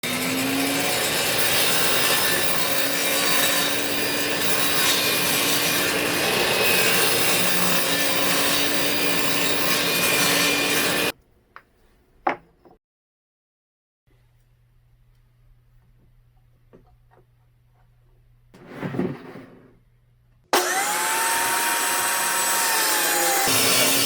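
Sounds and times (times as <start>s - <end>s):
table saw cutting wood: 0.0s - 11.1s, 20.5s - 24.0s.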